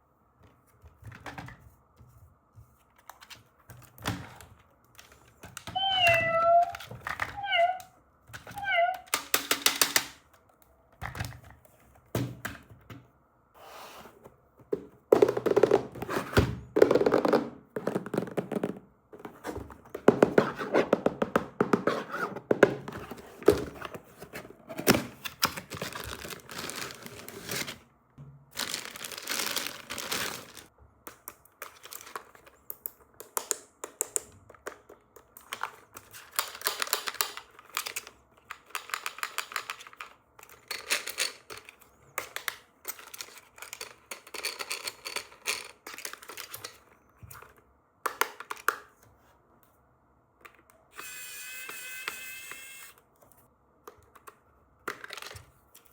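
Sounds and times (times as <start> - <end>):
packaging crinkling and tearing: 25.1 - 27.8, 28.5 - 30.7.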